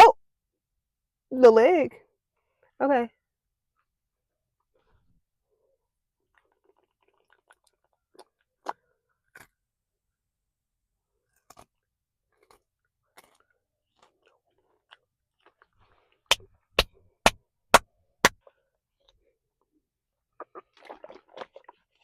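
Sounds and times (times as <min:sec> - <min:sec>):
soft crackling chewing: 0:04.6 - 0:09.7, 0:11.1 - 0:16.7.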